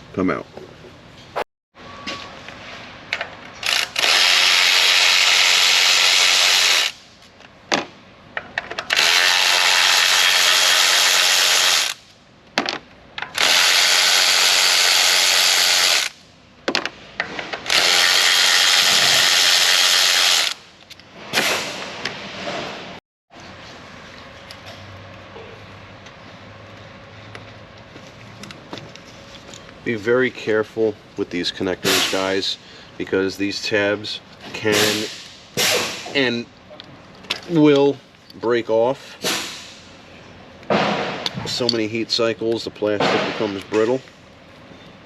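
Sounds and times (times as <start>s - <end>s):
power ratchet running: 3.6s - 7.0s, 8.9s - 12.0s, 13.3s - 16.2s, 17.7s - 20.6s.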